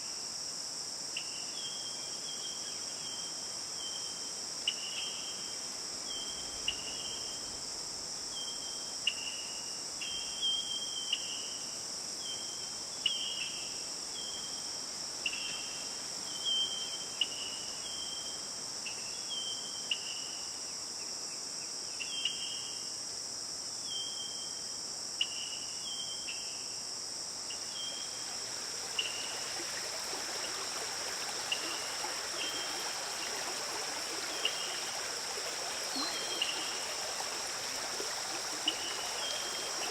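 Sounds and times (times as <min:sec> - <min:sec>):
high-pitched insect chorus: 0:00.0 - 0:39.9
flowing stream: 0:27.5 - 0:39.9.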